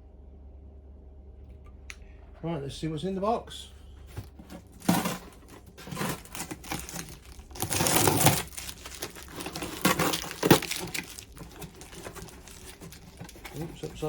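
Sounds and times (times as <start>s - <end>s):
cardboard packaging rustling: 4.0s - 14.0s.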